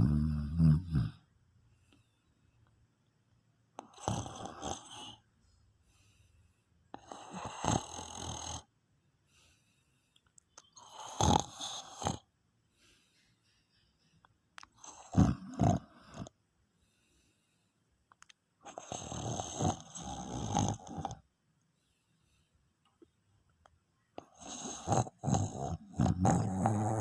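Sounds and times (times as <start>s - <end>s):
man snoring: 0.0s - 1.2s, 3.8s - 5.2s, 7.0s - 8.7s, 10.8s - 12.2s, 14.8s - 16.3s, 18.7s - 21.2s, 24.4s - 27.0s
quiet breathing: 0.0s - 2.8s, 3.8s - 8.4s, 9.2s - 18.0s, 18.6s - 23.2s.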